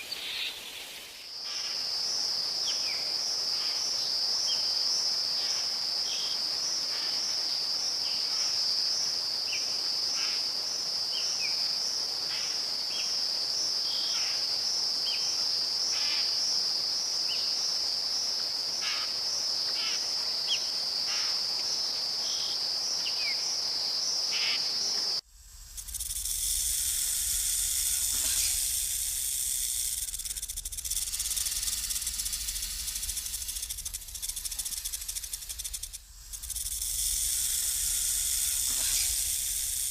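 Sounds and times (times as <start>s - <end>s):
high-pitched insect trill: 0.0s - 39.9s
loud steady hiss: 0.0s - 39.9s
low rumble: 25.3s - 38.1s.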